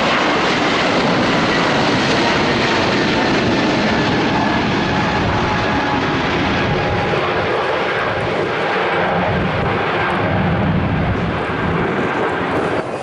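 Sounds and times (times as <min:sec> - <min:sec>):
jet engines roaring: 0:00.0 - 0:13.0.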